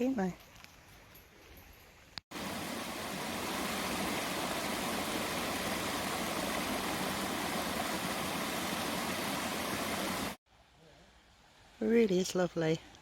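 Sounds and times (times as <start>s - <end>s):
stream water rushing: 2.3s - 10.4s.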